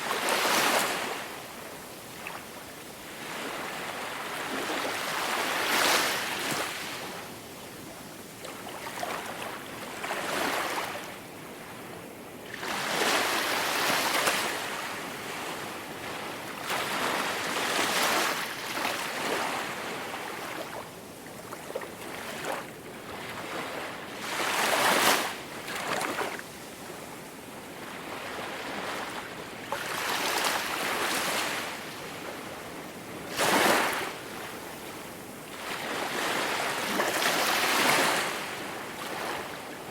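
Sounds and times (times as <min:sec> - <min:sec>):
ocean waves breaking on shore: 0:27.9 - 0:39.8.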